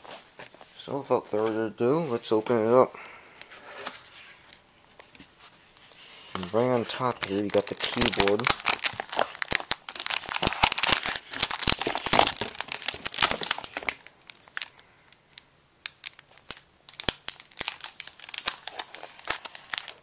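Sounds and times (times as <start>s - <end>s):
packaging crinkling: 6.3s - 20.0s
packaging clicks: 7.0s - 14.7s, 15.9s - 20.0s.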